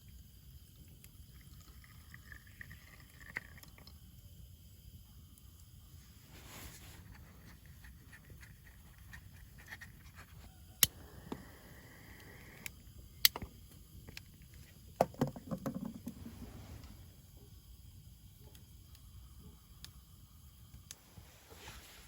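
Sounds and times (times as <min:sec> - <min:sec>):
knocking and clatter: 0:15.0 - 0:16.3.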